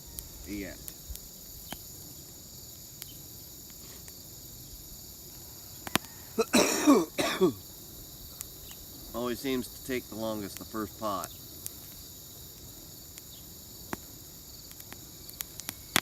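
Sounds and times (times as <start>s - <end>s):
insects chirring: 0.0s - 16.0s
person coughing: 6.4s - 7.6s.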